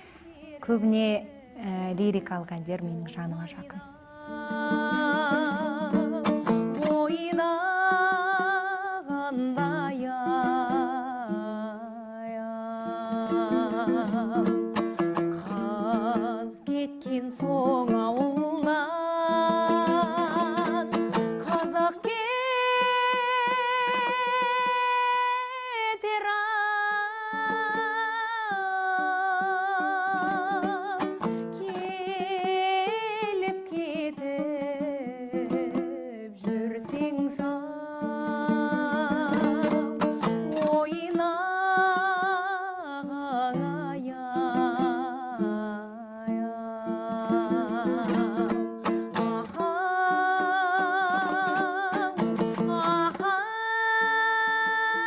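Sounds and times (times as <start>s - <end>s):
woman singing with vibrato: 0.0s - 55.0s
plucked string accompaniment: 1.6s - 55.0s.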